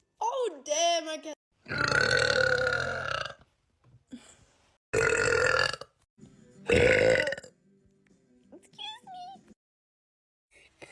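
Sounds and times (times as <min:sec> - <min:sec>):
woman burping loudly: 0:01.7 - 0:03.4, 0:05.0 - 0:06.0, 0:06.7 - 0:07.5.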